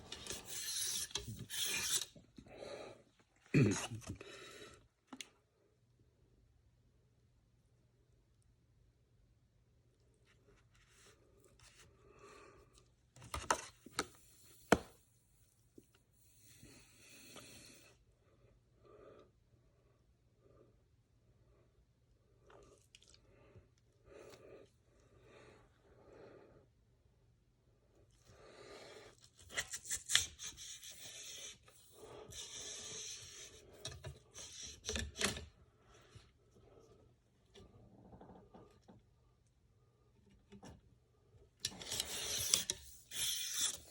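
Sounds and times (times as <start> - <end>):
cleaning rod rasping in barrel: 0.0 - 2.2, 41.7 - 43.9.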